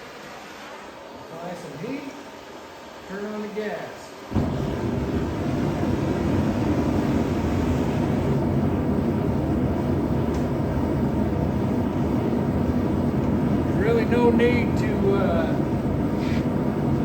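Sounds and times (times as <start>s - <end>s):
gas forge burner rushing: 4.3s - 17.0s.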